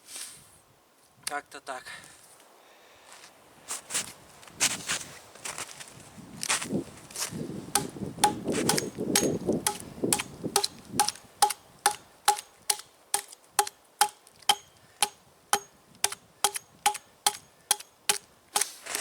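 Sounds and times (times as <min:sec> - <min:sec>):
wood rustling: 0:06.5 - 0:19.0
axe chopping log: 0:07.8 - 0:19.0.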